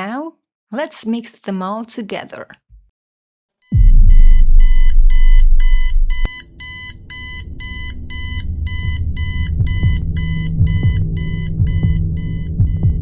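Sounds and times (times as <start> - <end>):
high electronic alarm beeping: 3.7 - 13.0
loud deep rumble: 3.8 - 6.3
low drone: 3.8 - 6.3.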